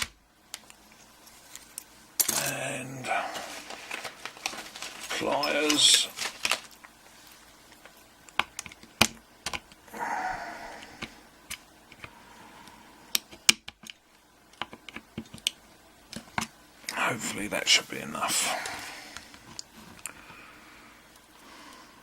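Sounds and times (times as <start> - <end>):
scraping rustle: 3.0 - 6.7.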